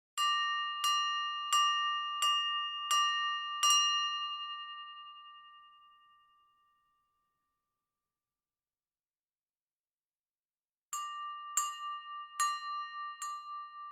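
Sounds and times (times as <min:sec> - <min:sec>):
silverware tapping a glass: 0:00.2 - 0:06.0, 0:11.0 - 0:13.9.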